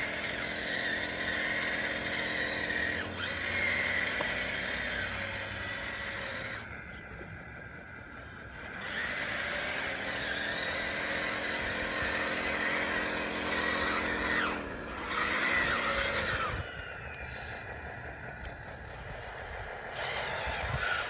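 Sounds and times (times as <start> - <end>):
toy bulldozer motor whine: 0.0 - 21.0
thin squeals from drive: 7.2 - 9.4, 18.8 - 21.0.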